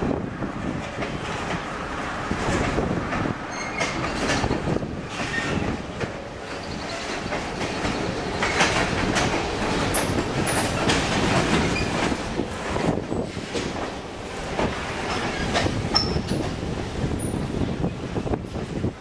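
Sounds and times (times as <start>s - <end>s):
train wheels clicking over rail joints: 0.5s - 19.0s
high wheel squeals: 3.5s - 4.1s.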